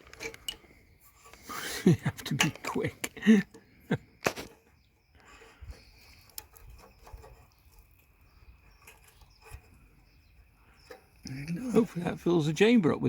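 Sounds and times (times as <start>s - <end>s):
small parts tapping and clicking: 0.0s - 1.5s, 2.1s - 10.0s.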